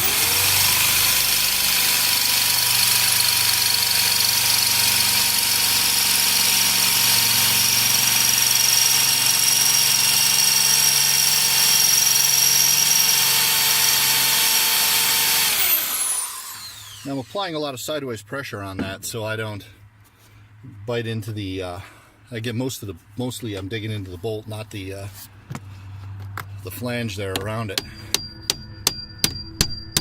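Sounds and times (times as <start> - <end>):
power drill boring into metal: 0.0 - 17.4.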